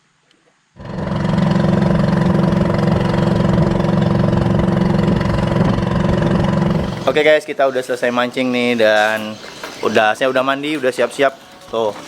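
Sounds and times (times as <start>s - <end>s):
engine idling: 0.8s - 7.2s.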